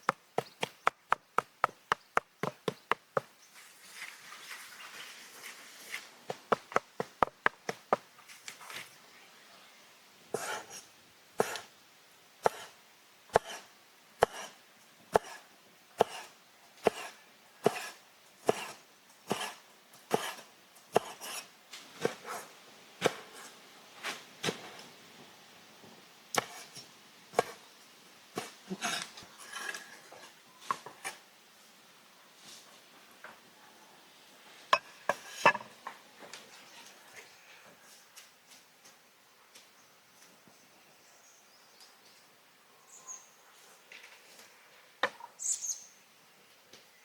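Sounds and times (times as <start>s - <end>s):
knife chopping on wooden board: 12.4s - 12.7s, 13.4s - 13.6s, 14.2s - 14.5s, 15.2s - 15.4s, 16.0s - 21.4s, 26.4s - 26.6s, 27.4s - 27.6s.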